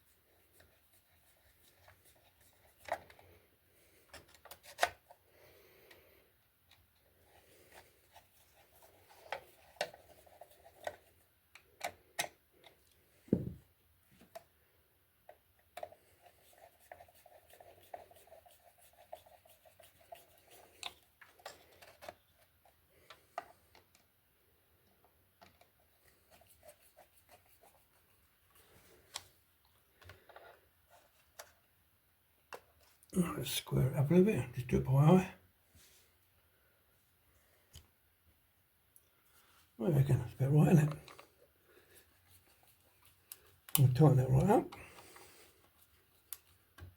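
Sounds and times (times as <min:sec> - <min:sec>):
faint plastic clicks and scraping: 0:00.4 - 0:05.2, 0:05.8 - 0:13.3, 0:14.1 - 0:14.6, 0:15.2 - 0:31.7, 0:40.8 - 0:44.0, 0:44.7 - 0:46.9
dull knock: 0:13.3 - 0:13.6.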